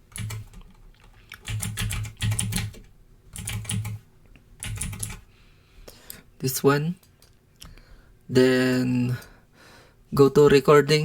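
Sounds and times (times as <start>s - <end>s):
typing on computer keyboard: 0.1s - 4.0s, 4.6s - 5.2s.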